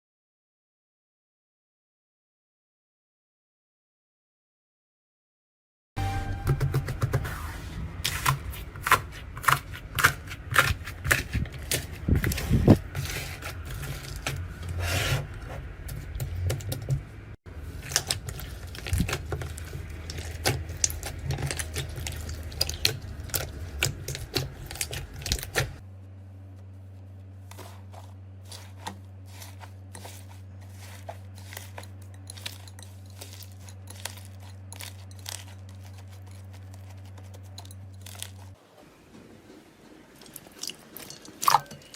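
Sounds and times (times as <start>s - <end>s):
steady low hum: 6.0s - 40.1s
slime clicking and crackling: 17.7s - 25.8s.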